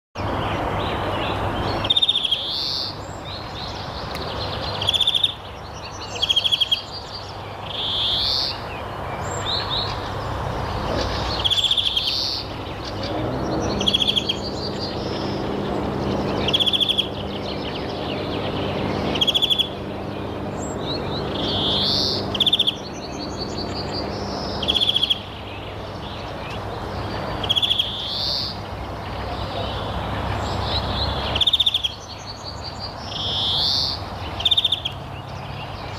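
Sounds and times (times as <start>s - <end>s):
songbird calling: 0.2s - 35.9s
steady background rush: 10.0s - 27.8s
low hum: 12.4s - 27.2s.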